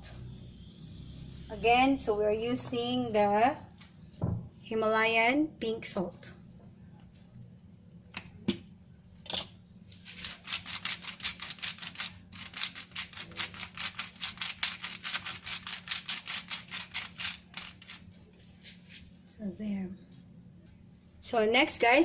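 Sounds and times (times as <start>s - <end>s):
salt grinder grinding: 10.0s - 18.0s.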